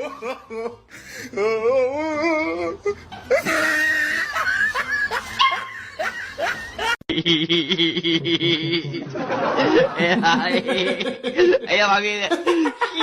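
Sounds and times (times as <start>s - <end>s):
people laughing: 2.9s - 13.0s.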